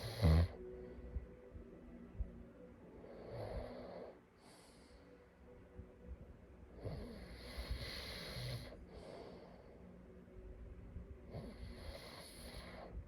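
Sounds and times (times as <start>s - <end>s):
person snoring faintly: 0.0s - 0.6s.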